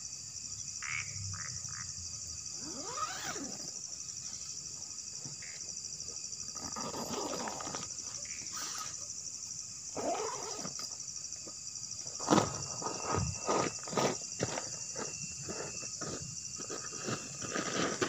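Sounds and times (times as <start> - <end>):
insects chorus: 0.0 - 18.0.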